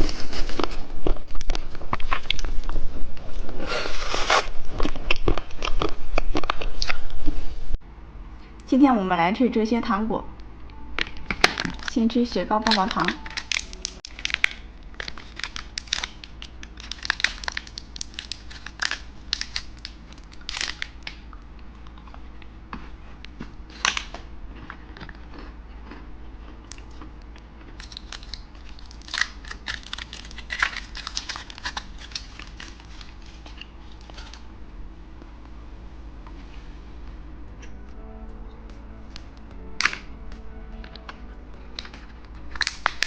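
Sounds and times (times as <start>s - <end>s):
plastic wrapper crinkling and tearing: 11.5s - 21.3s, 27.7s - 34.4s, 41.7s - 43.0s.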